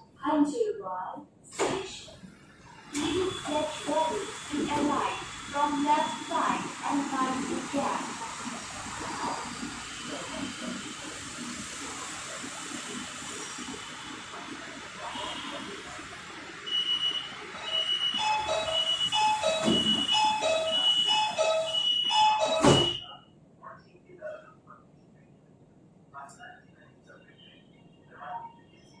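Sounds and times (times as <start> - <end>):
two-tone door warning beeping: 2.9 - 7.5, 16.6 - 23.2.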